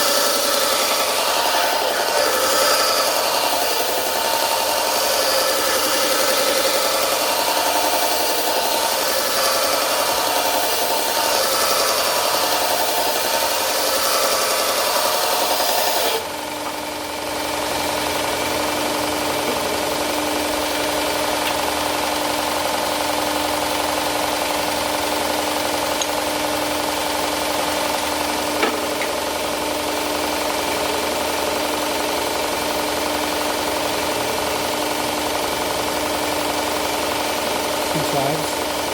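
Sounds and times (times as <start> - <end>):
steel grinding against belt: 0.0 - 16.2
belt grinder humming: 0.0 - 30.9.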